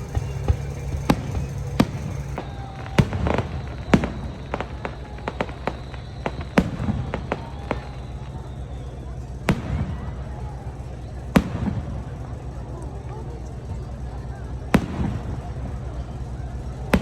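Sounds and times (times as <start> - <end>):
crackling pops: 0.0 - 8.5
fireworks bangs: 0.0 - 12.3, 14.7 - 17.0.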